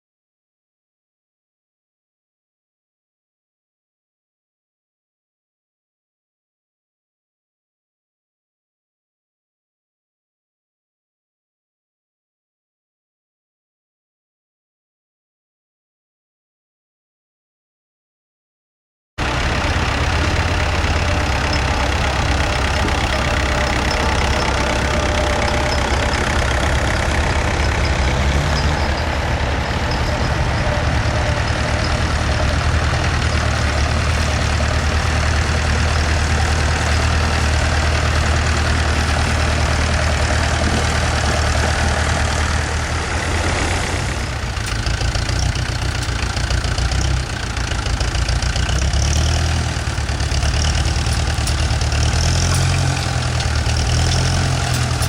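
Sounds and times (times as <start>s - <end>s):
tractor engine idling: 19.2s - 55.0s.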